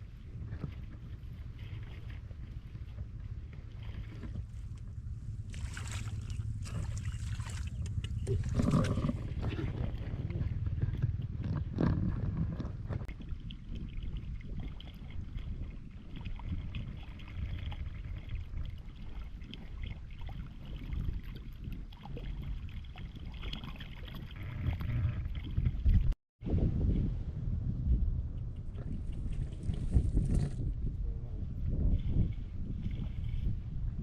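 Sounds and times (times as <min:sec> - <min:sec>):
water sloshing and splashing: 0:00.0 - 0:26.2
wind on microphone: 0:00.0 - 0:34.0.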